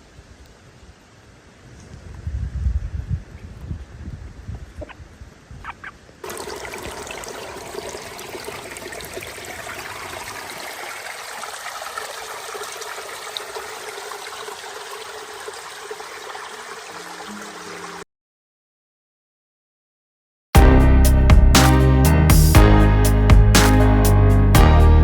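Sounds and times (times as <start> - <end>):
running water trickling: 6.2 - 18.0.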